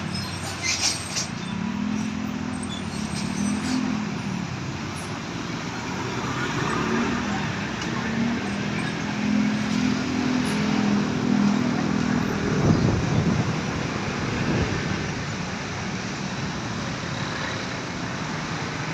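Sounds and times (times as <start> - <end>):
steady road noise: 0.0 - 18.9.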